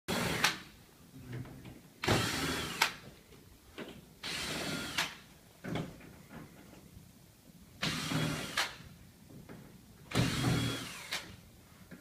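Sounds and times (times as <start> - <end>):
power screwdriver whirring: 10.1 - 11.3.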